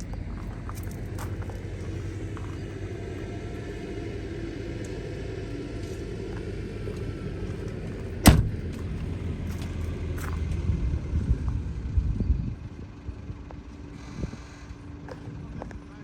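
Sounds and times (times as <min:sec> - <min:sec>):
diesel engine running: 0:00.0 - 0:15.6
loud sharp metal clank: 0:08.3 - 0:08.6.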